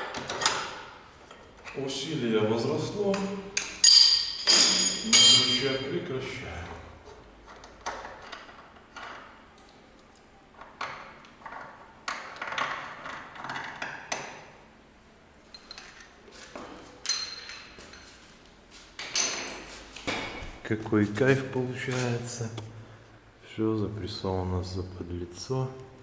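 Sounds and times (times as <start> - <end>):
metallic clinks and knocks: 3.6 - 5.8, 17.0 - 18.1.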